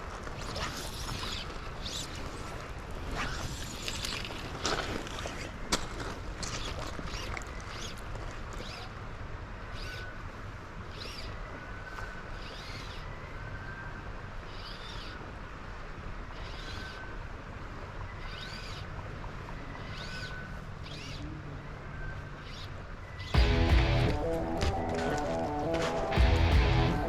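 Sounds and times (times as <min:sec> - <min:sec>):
bird chirping: 0:19.6 - 0:24.0
loud music: 0:23.4 - 0:27.0.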